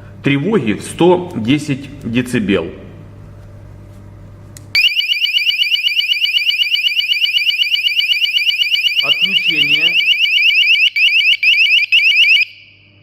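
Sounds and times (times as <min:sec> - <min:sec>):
door alarm siren: 0:04.8 - 0:13.0.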